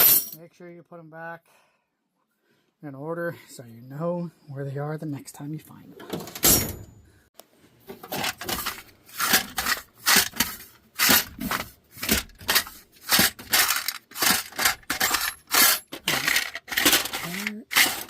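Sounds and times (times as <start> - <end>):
metal wrenches clinking: 0.0 - 0.4, 8.0 - 18.0.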